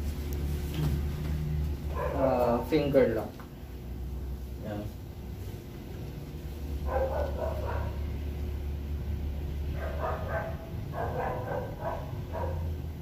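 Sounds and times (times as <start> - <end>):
steady low hum: 0.0 - 13.0
dog barking: 1.9 - 2.4, 6.8 - 8.1, 9.7 - 12.8.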